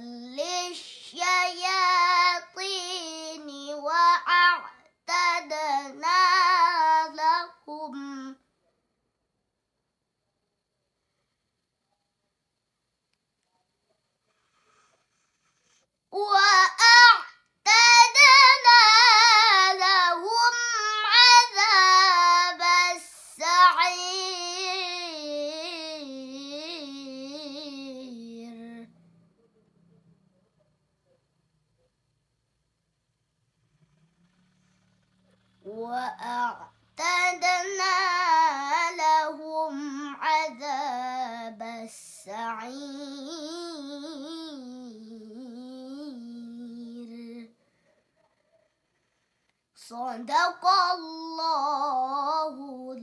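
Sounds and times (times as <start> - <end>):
girl chanting melodic recitation: 0.0 - 8.4, 16.2 - 29.0, 35.6 - 47.5.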